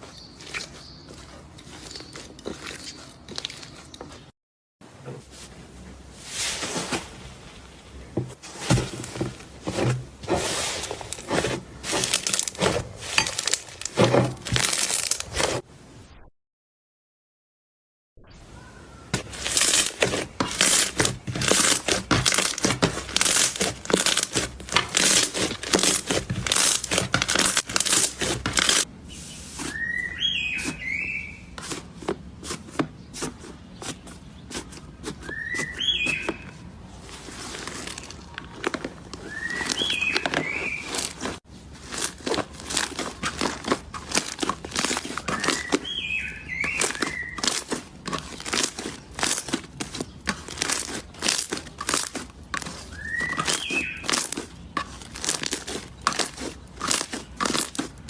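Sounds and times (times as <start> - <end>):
slime crackling and popping: 11.2 - 15.4, 19.2 - 28.9, 41.8 - 58.0
whistle-like squeaks: 29.6 - 31.4, 35.2 - 36.5, 39.2 - 41.0, 52.9 - 54.0.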